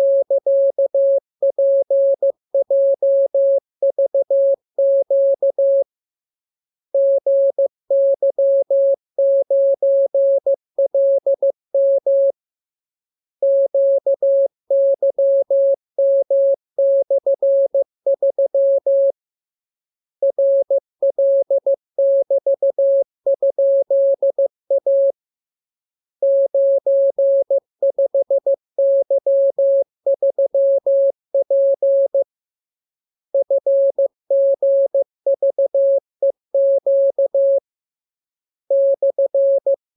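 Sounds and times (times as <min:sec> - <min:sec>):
morse code beeps: 0:38.7 - 0:39.8.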